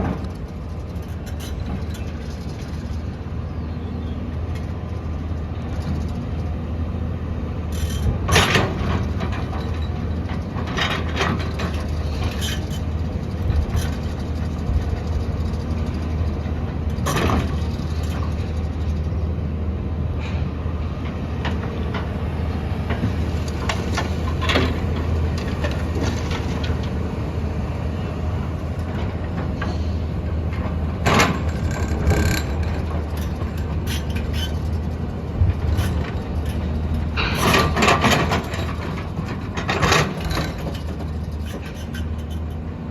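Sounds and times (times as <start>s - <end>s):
diesel engine running: 0.0s - 42.9s
machine clanks and knocks: 7.7s - 19.1s, 22.8s - 27.1s, 30.5s - 42.7s.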